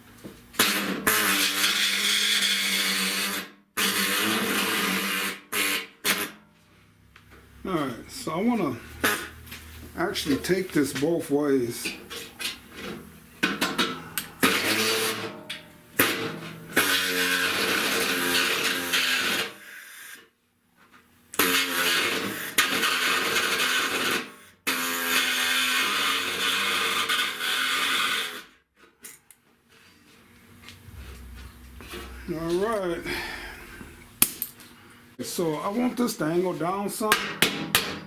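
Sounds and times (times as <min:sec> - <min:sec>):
cut-off saw grinding sheet metal: 0:00.6 - 0:06.4, 0:11.8 - 0:19.7, 0:21.4 - 0:28.5.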